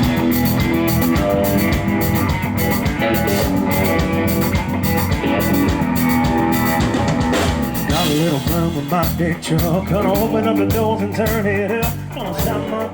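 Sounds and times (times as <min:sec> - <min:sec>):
country-rock band playing: 0:00.0 - 0:12.9.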